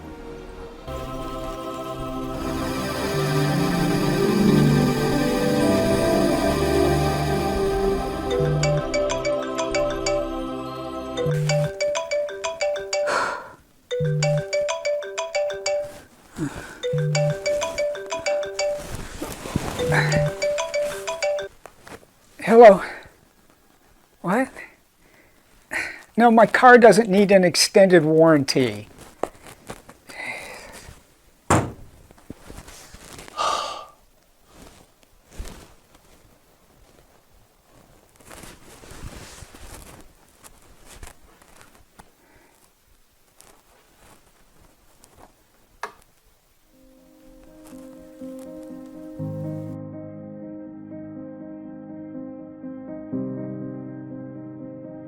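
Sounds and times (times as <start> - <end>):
marimba-like phone ringtone: 2.6 - 10.6, 11.2 - 21.6
sharp thud: 31.5 - 31.9.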